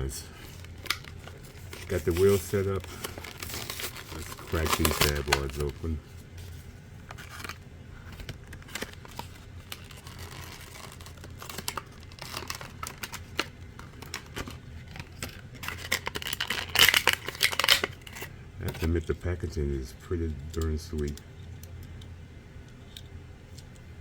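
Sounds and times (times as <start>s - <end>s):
packaging crinkling and tearing: 0.3s - 6.0s, 7.0s - 18.8s.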